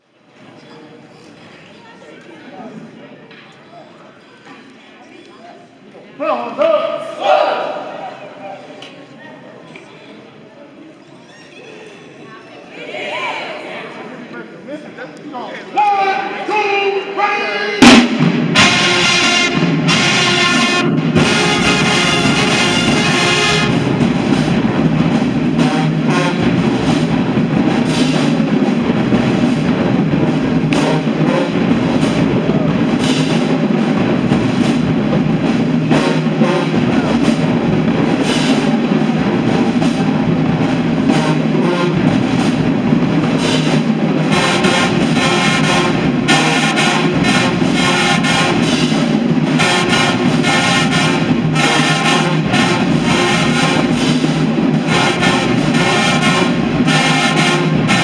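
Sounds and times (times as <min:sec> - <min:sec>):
drumline: 0:15.7 - 0:58.0
brass playing a tune: 0:17.8 - 0:58.0.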